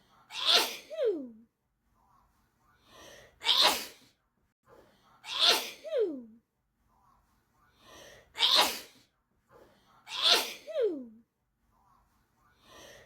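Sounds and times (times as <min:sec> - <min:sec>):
person sneezing: 0:00.3 - 0:01.2, 0:03.4 - 0:04.1, 0:05.3 - 0:06.1, 0:08.4 - 0:09.0, 0:10.1 - 0:11.0.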